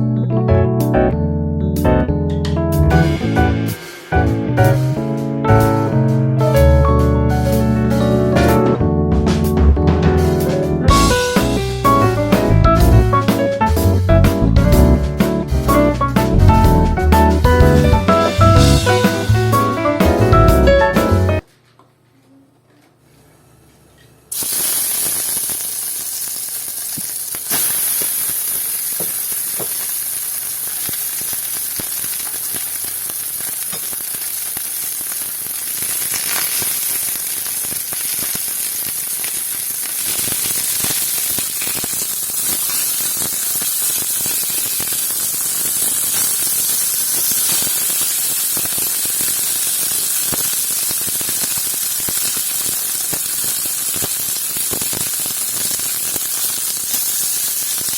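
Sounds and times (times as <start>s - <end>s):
food sizzling in a hot pan: 24.3s - 57.9s.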